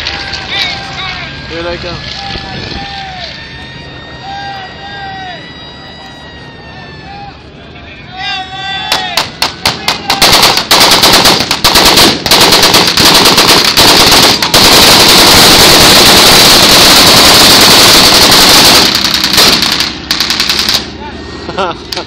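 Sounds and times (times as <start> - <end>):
machine-gun fire: 9.2 - 20.9.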